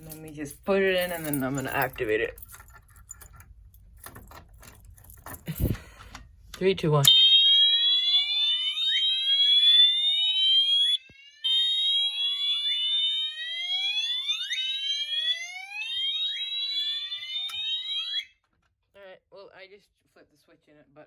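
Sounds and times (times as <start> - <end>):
fire alarm slow rising whoop: 7.1 - 18.3.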